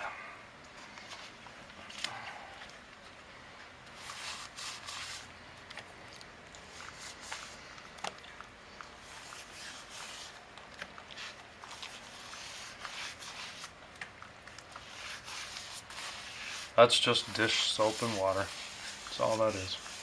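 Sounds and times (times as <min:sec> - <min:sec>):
rubbing and brushing: 0:03.9 - 0:05.4, 0:06.6 - 0:07.8, 0:08.9 - 0:13.8, 0:14.4 - 0:20.0.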